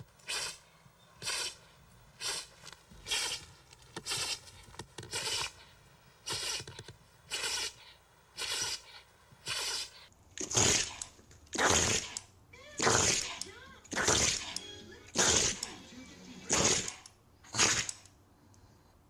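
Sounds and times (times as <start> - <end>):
pet sneezing: 0.2 - 1.6, 2.2 - 4.5, 5.1 - 5.6, 6.3 - 6.7, 7.3 - 11.0, 11.6 - 12.2, 12.8 - 14.6, 15.2 - 15.7, 16.5 - 17.9.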